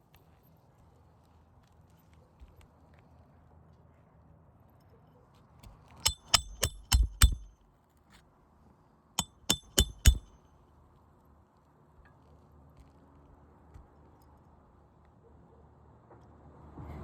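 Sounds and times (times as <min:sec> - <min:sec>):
hammer ringing metallic blows: 0:06.1 - 0:07.5, 0:09.2 - 0:10.3.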